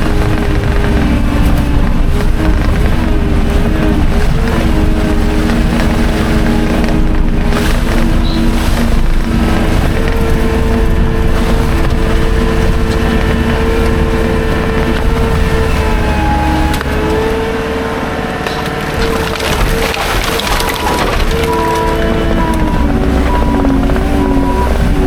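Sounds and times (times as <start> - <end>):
skid steer engine whining: 0.0 - 25.0.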